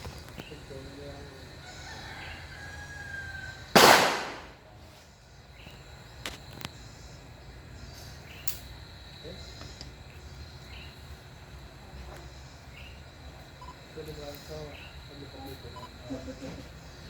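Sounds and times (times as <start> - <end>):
gunshot with echo: 3.8 - 4.6.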